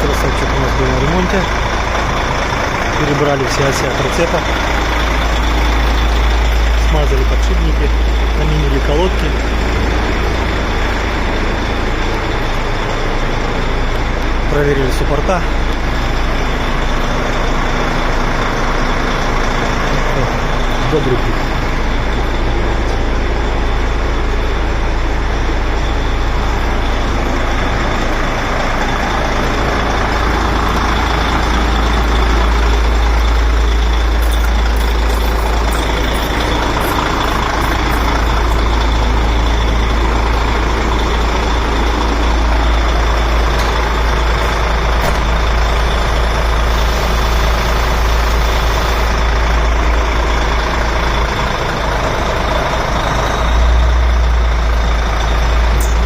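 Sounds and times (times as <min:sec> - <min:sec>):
high whine: 0:00.0 - 0:56.0
truck diesel engine rumbling: 0:00.0 - 0:56.0.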